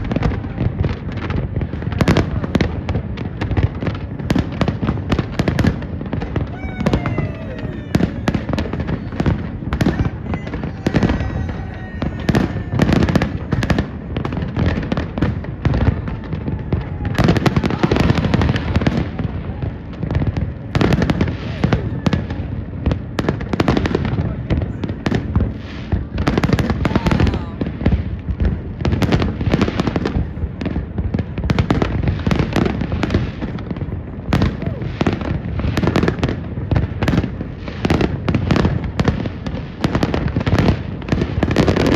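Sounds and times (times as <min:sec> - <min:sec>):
fireworks bangs and crackling: 0:00.0 - 0:41.9
falling firework whistles: 0:05.5 - 0:15.0.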